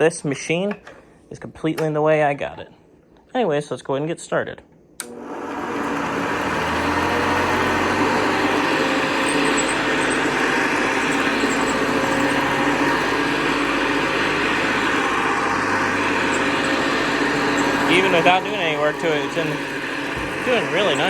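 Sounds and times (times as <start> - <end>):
vacuum cleaner running: 5.0 - 21.0.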